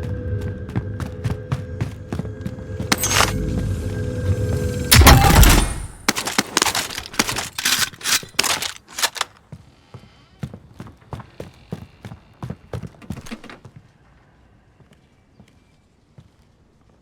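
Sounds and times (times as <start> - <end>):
video game gunfire: 4.9 - 9.3.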